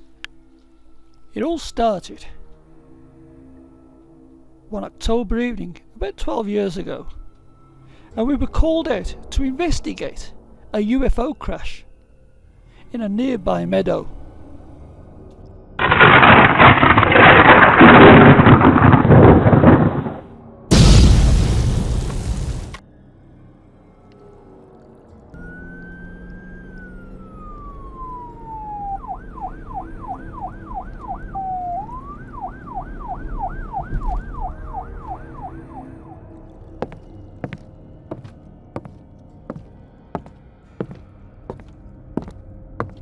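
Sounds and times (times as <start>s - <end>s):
loud explosion boom ringing: 20.7s - 22.8s
police siren wailing and yelping: 25.5s - 36.2s.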